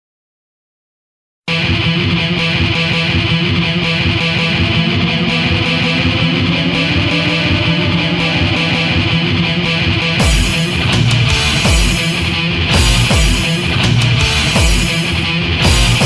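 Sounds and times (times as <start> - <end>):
instrumental guitar music: 1.5 - 16.0.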